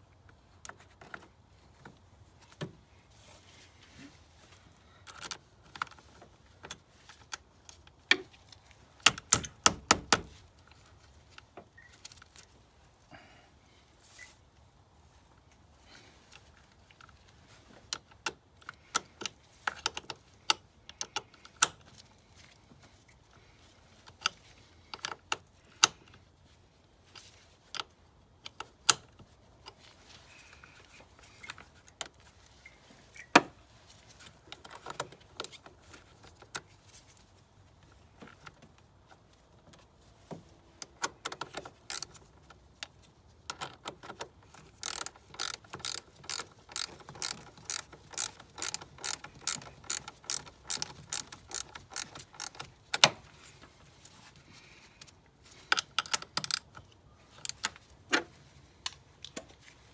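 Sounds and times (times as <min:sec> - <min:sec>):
hand tools clicking on metal: 0:41.4 - 0:42.2, 0:44.8 - 0:53.1, 0:56.0 - 0:56.7.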